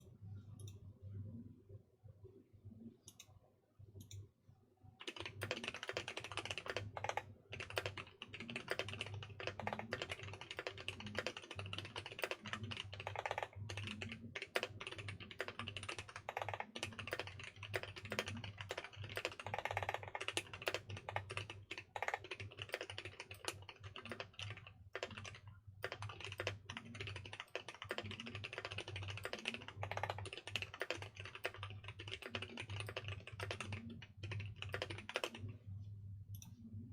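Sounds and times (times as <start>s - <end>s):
mechanical keyboard typing: 5.0s - 35.5s.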